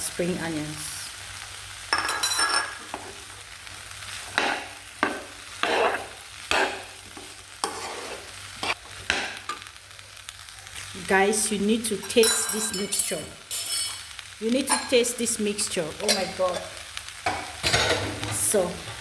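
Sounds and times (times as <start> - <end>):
food sizzling in a pot: 0.0 - 19.0
utensil stirring in a pot: 4.2 - 9.6.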